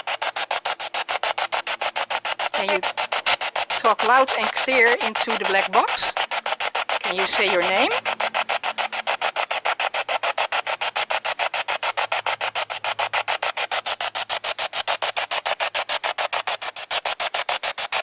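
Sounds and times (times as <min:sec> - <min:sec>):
radio sweeping chopped hiss: 0:01.5 - 0:13.4.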